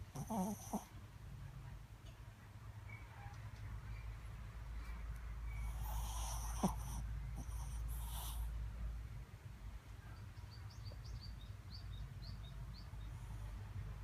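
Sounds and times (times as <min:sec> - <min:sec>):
dog snoring breath: 0:00.1 - 0:00.9, 0:05.6 - 0:08.6
small bird chirping: 0:10.0 - 0:13.2.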